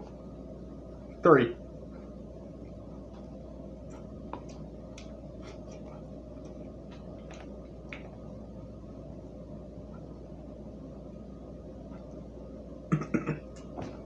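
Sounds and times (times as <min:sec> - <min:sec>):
low background hum: 0:00.0 - 0:14.0
person eating wet smacks: 0:03.1 - 0:08.3.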